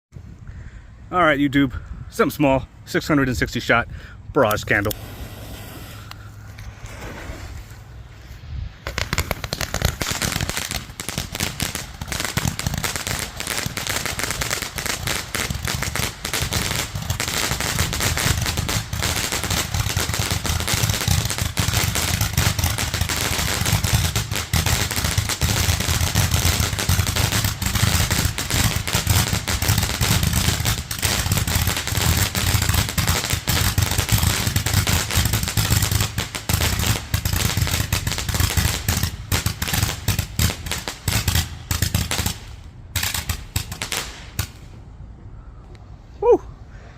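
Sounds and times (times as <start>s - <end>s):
rapid firework shots: 8.8s - 44.7s.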